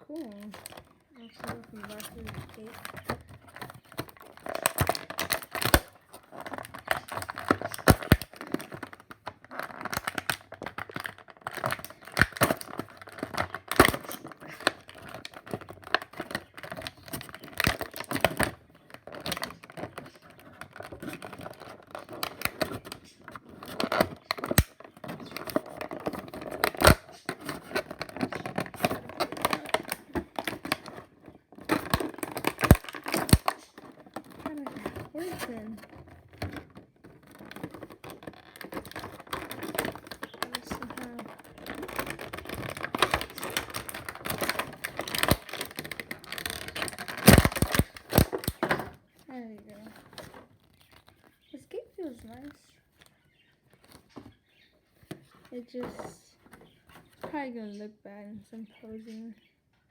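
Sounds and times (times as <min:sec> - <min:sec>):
packaging crinkling and tearing: 0:00.1 - 0:54.6
sharp plastic clicks: 0:00.2 - 0:31.0, 0:31.6 - 0:36.6, 0:37.2 - 0:48.9.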